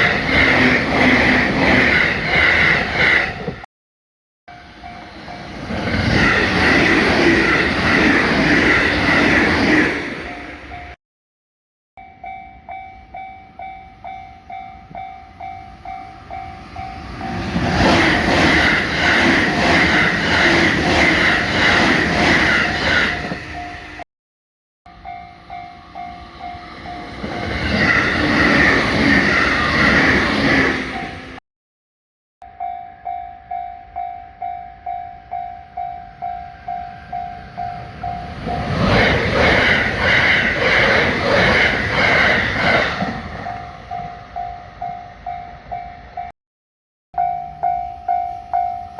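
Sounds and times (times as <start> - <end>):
passing train rumble: 0.0 - 3.7, 4.5 - 11.0, 13.0 - 24.0, 24.9 - 31.4, 35.7 - 46.3
level-crossing warning bell dinging: 4.5 - 5.8, 10.1 - 11.0, 12.0 - 17.6, 23.2 - 24.0, 24.9 - 28.2, 32.4 - 38.9, 43.3 - 46.3, 47.2 - 48.9.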